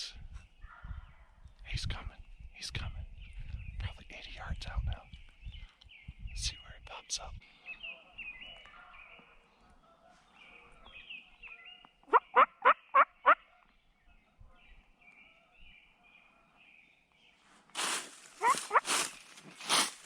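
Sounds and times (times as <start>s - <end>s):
faint songbird chirping: 0.0s - 20.0s
turkey gobbling: 12.1s - 13.6s, 18.4s - 19.4s.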